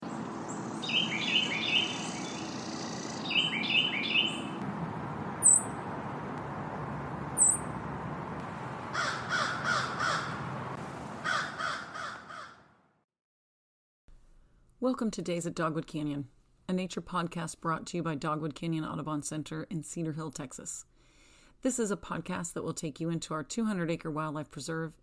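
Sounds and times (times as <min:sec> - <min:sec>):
rough repeated bird calls: 0:00.0 - 0:04.6, 0:05.3 - 0:05.9, 0:07.3 - 0:07.8, 0:08.8 - 0:12.7
short high bird chirps: 0:00.5 - 0:04.6, 0:05.4 - 0:05.8, 0:07.4 - 0:07.7
trilled bird phrases: 0:00.5 - 0:04.6, 0:07.3 - 0:07.8.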